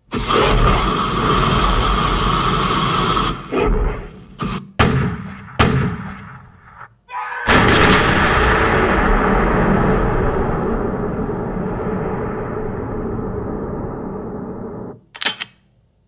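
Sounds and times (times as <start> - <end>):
dense gunfire blast: 0.2 - 6.9, 7.5 - 15.1
sharp echoing gunshots: 3.4 - 6.9, 7.5 - 15.1.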